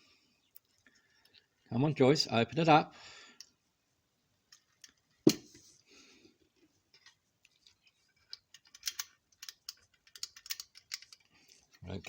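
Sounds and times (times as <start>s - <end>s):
small parts clicking and scraping: 0.5s - 1.7s, 4.4s - 5.6s, 6.5s - 12.0s.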